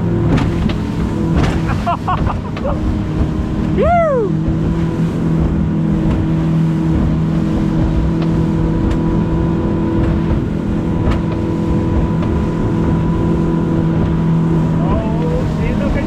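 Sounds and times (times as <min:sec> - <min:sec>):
engine running with low rumble: 0:00.0 - 0:16.0
sharp knocks: 0:00.3 - 0:02.7.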